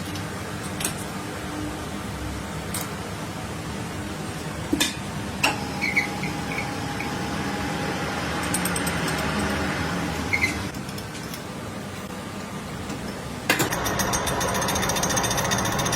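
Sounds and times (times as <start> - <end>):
short high squeaks: 5.7 - 6.7, 10.3 - 10.7
lathe running with steady hum: 13.6 - 15.9.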